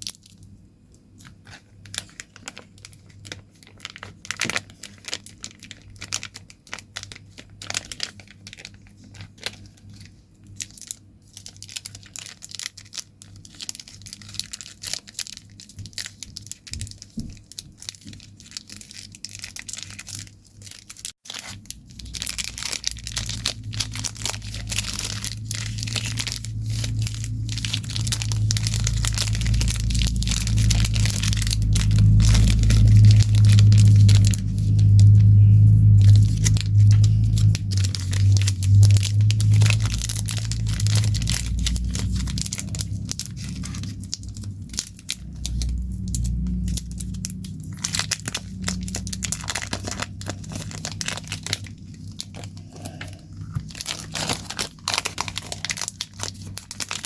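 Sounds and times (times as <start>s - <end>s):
sweet wrappers crinkling: 0.0s - 57.0s
low hum: 19.6s - 57.0s.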